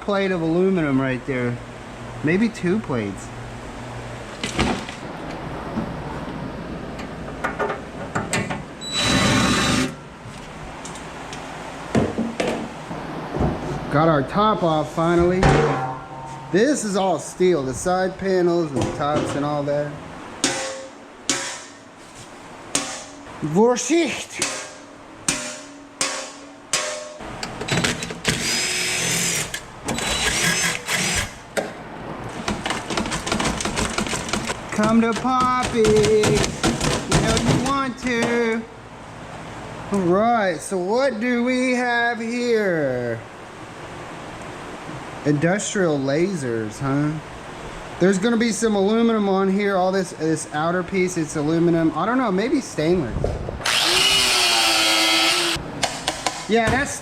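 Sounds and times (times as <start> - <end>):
power screwdriver whining: 8.9 - 10.0, 28.3 - 31.4, 53.6 - 55.6
sharp ringing metal strikes: 15.4 - 17.2, 24.4 - 27.2
metal knocks and clicks: 32.4 - 38.4.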